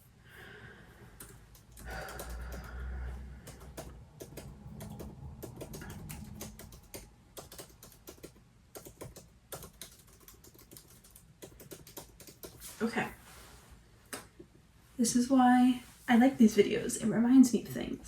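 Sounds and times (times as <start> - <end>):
typing on computer keyboard: 1.2 - 12.7
low rumble: 2.5 - 7.5.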